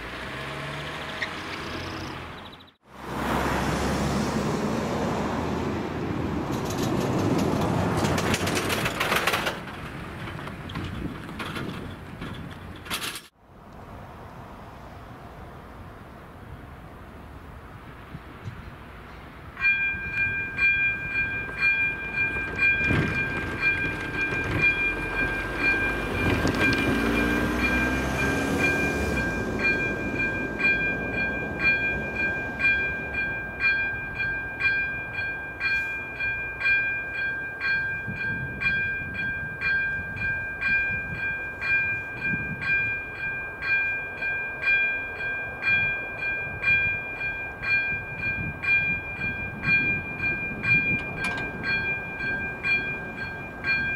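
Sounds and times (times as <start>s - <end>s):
train rumbling over crossing: 0.0s - 16.2s, 16.8s - 53.9s
level crossing warning bell: 19.6s - 53.9s.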